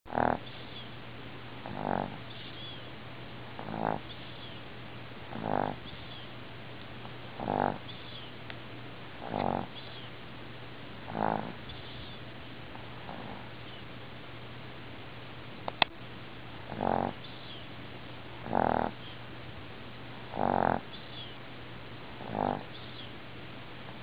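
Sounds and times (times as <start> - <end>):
dog snoring: 0.1 - 0.6, 1.6 - 2.6, 3.6 - 4.2, 5.3 - 6.2, 7.3 - 8.0, 9.2 - 9.8, 11.1 - 12.2, 12.8 - 13.6, 16.7 - 17.2, 18.4 - 19.1, 20.3 - 21.0, 22.2 - 22.9.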